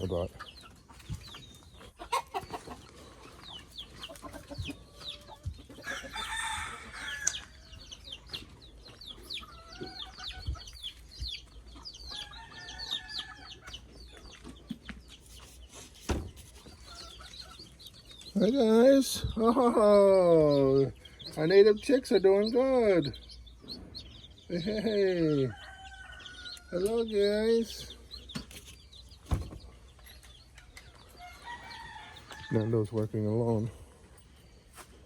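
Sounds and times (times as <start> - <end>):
chick peeps: 0.0 - 31.4
chickens clucking: 0.0 - 35.0
rooster crowing: 5.8 - 7.5, 25.5 - 26.5, 31.2 - 32.7.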